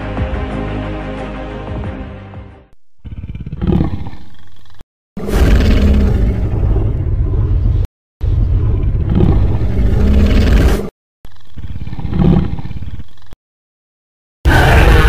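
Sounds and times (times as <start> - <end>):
deep creature roar: 3.0 - 7.6, 14.5 - 15.0
rumbling growl: 3.0 - 13.4, 14.5 - 15.0.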